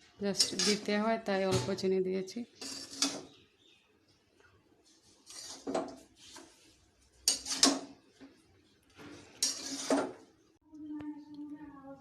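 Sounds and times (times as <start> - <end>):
metal kitchenware clattering: 0.3 - 1.8, 2.6 - 3.3, 5.2 - 6.0, 7.2 - 8.0, 9.0 - 10.2.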